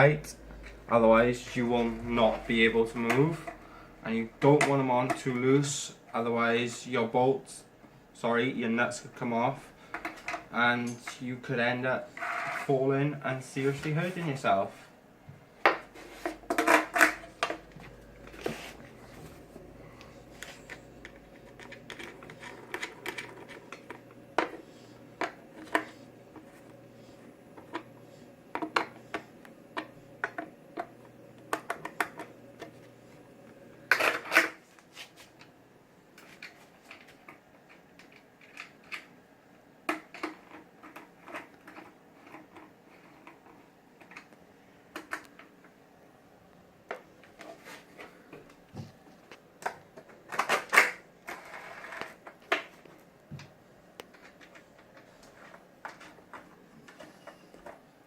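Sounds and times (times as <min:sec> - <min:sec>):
small hard parts clicking and knocking: 0:36.4 - 0:39.1.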